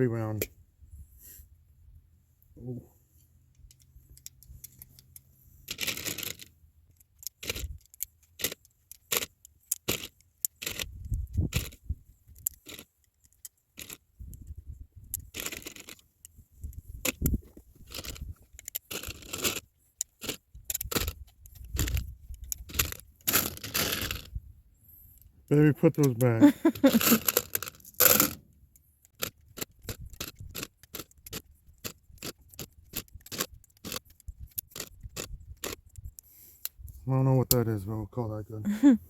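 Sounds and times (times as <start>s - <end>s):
metal magazines clinking and scraping: 3.7s - 10.9s, 17.0s - 24.3s, 25.8s - 28.4s.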